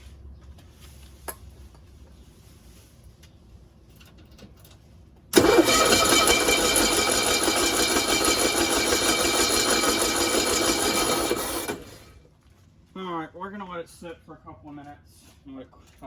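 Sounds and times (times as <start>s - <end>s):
engine starting and running: 5.3s - 12.3s.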